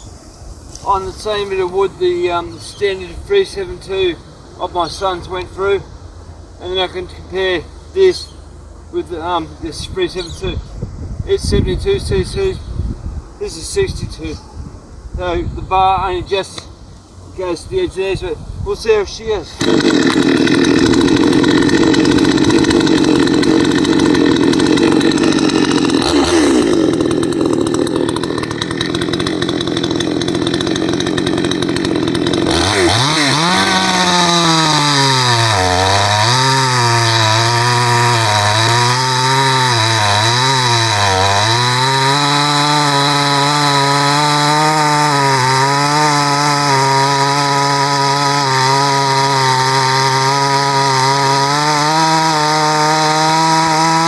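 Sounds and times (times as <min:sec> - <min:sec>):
chainsaw cutting log: 0:19.4 - 0:54.0
chainsaw engine revving: 0:19.4 - 0:54.0.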